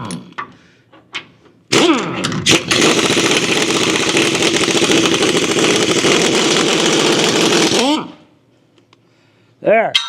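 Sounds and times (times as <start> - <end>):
power wrench spinning: 2.4 - 8.0.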